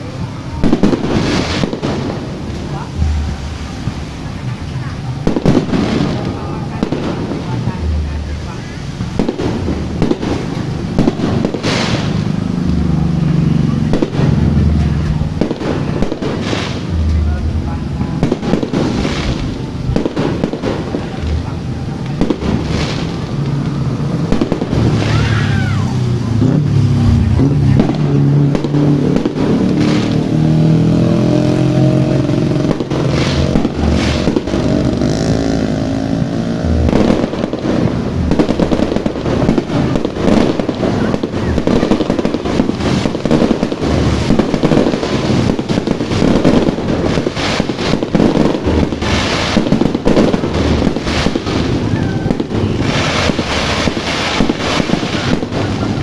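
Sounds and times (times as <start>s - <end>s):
fireworks bangs and crackles: 0.0s - 56.0s.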